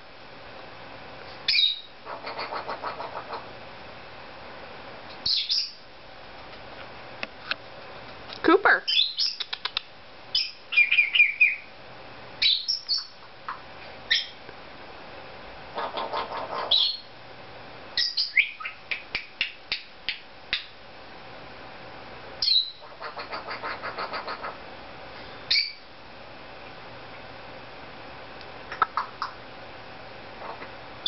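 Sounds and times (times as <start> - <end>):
parrot rapid chattering: 1.5 - 3.5, 8.9 - 11.6, 15.7 - 17.0, 22.4 - 24.6, 28.7 - 29.4, 30.4 - 30.7
parrot clicks and squeaky whistles: 9.2 - 11.5.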